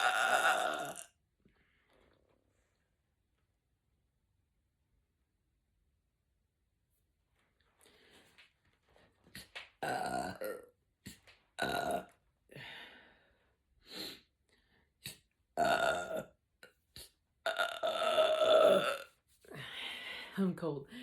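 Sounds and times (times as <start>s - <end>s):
woman burping: 0.0s - 1.2s, 9.8s - 10.7s, 11.6s - 12.1s, 15.6s - 16.4s, 17.4s - 19.1s.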